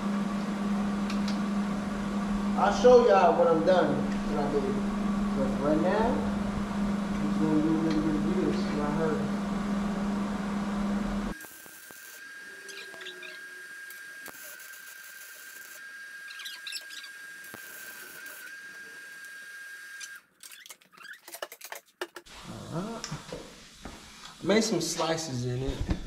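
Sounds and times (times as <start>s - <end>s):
loud steady hum: 0.0s - 14.6s
rotary cutting tool whining: 11.3s - 20.2s.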